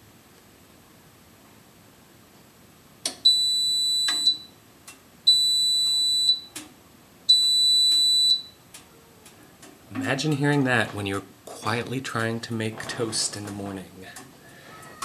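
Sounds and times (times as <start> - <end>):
high-pitched alarm beeps: 3.2 - 4.6, 5.3 - 6.6, 7.3 - 8.6.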